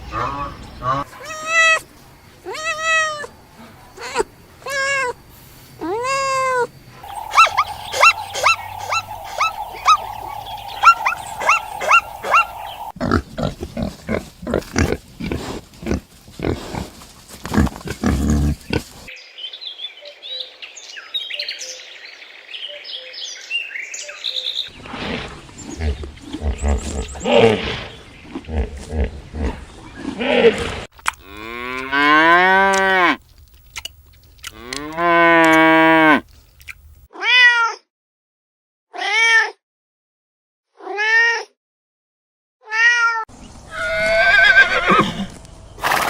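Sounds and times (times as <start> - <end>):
steady hiss: 7.0 - 12.9
faint high twittering: 7.0 - 13.0
long arching animal calls: 7.0 - 13.0
rapid chirping: 7.0 - 13.0.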